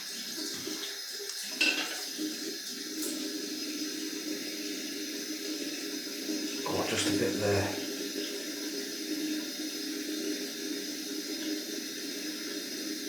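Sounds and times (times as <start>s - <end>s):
tap water running into sink: 0.0s - 13.0s.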